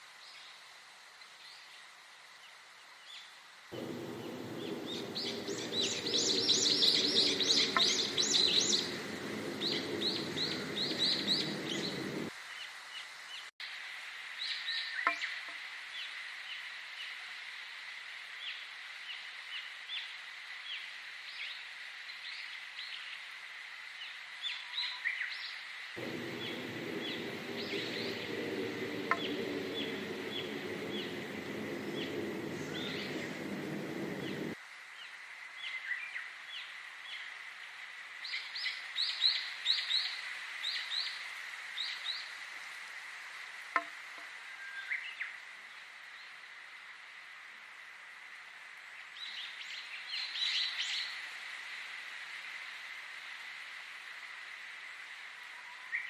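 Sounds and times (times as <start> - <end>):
low rumbling noise: 3.8 - 12.3, 26.0 - 34.6
songbirds chirping: 3.8 - 12.3, 26.0 - 34.6
steady high hum: 3.8 - 12.3, 26.0 - 34.6.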